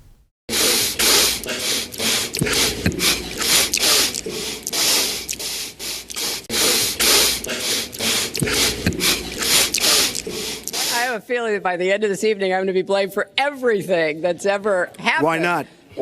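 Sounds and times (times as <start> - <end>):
man sniffing: 0.5 - 11.0.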